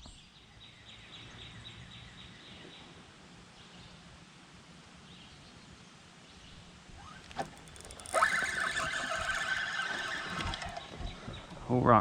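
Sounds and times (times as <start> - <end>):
fishing reel whirring: 6.9 - 11.7
reel click: 7.0 - 11.6
reel fast ticking: 7.0 - 11.8.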